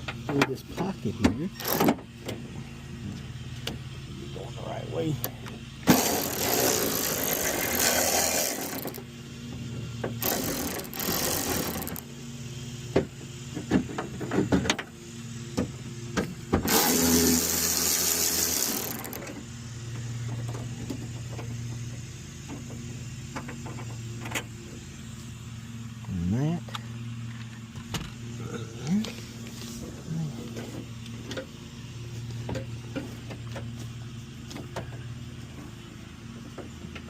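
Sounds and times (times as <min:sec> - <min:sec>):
steady low hum: 0:00.0 - 0:37.0.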